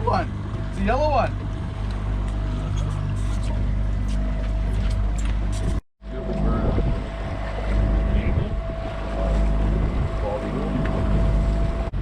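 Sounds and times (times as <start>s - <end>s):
boat engine running: 0.0s - 12.0s
wind buffeting microphone: 4.6s - 12.0s.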